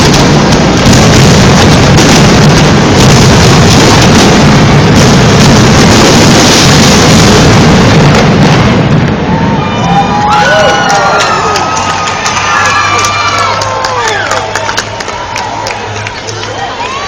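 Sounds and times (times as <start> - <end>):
fireworks bangs: 0.0 - 16.0
crowd cheering: 9.0 - 17.0.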